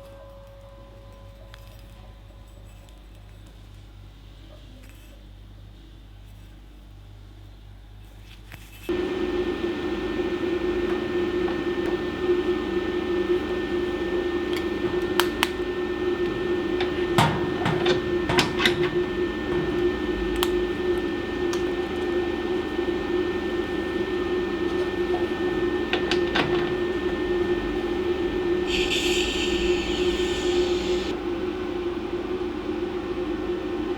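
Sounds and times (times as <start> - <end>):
welding arc buzzing: 8.9 - 31.2.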